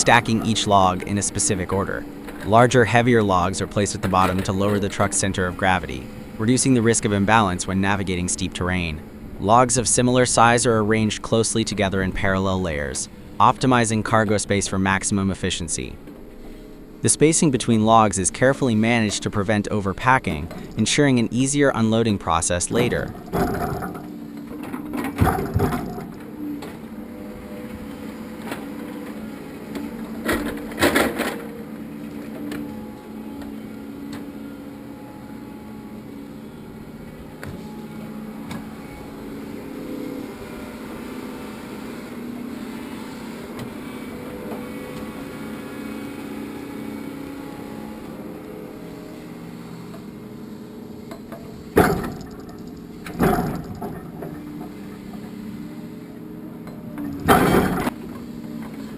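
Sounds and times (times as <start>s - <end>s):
loader engine running: 0.0s - 58.9s
logs knocking together: 22.8s - 24.1s, 25.2s - 26.2s, 51.8s - 54.4s, 57.2s - 57.9s.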